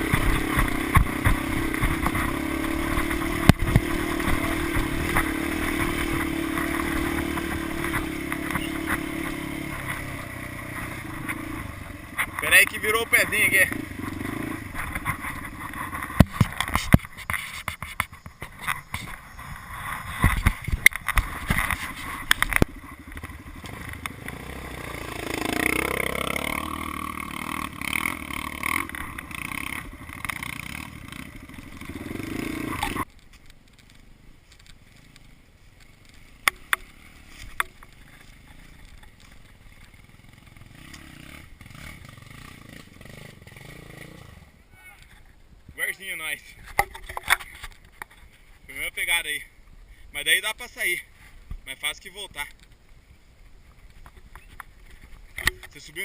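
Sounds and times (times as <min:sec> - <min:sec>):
motorcycle engine running: 0:00.0 - 0:16.8, 0:18.9 - 0:33.1, 0:35.9 - 0:44.7
bike knocking and scraping: 0:00.0 - 0:44.2, 0:45.0 - 0:49.4, 0:50.2 - 0:56.0.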